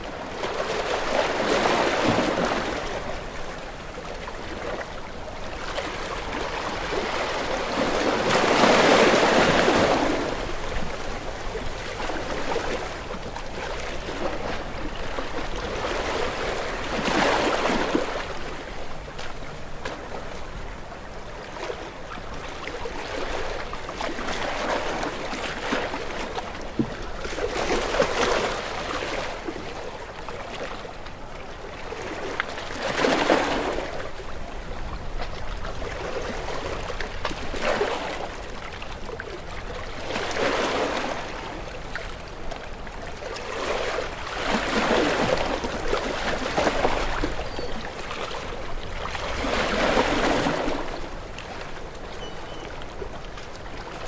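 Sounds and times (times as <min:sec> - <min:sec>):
sea waves breaking: 0:00.0 - 0:54.0.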